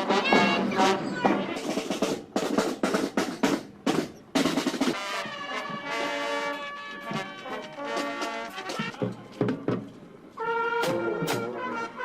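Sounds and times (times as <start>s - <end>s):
snare and bass drum strokes: 0.0s - 6.3s, 10.8s - 11.6s
marching band playing: 0.0s - 12.0s.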